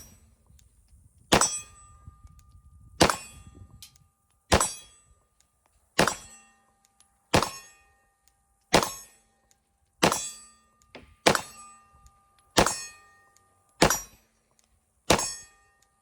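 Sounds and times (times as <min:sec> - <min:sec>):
pistol shots with metallic ring: 0:00.0 - 0:00.3, 0:01.3 - 0:02.1, 0:03.0 - 0:03.6, 0:04.5 - 0:05.2, 0:06.0 - 0:08.1, 0:08.7 - 0:16.0.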